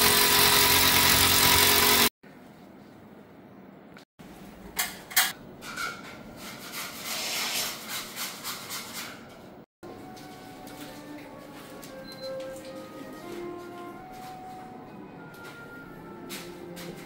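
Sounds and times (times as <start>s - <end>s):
rubbing and scraping: 6.3s - 9.5s.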